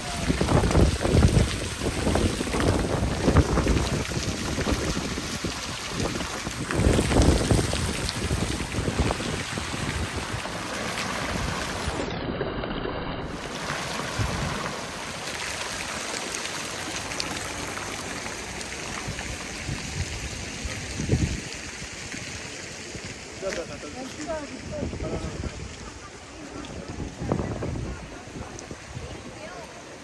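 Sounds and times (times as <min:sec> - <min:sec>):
fountain water splashing: 0:00.0 - 0:12.1, 0:13.2 - 0:30.0
wind buffeting microphone: 0:00.0 - 0:12.1, 0:19.0 - 0:23.3, 0:24.0 - 0:29.6.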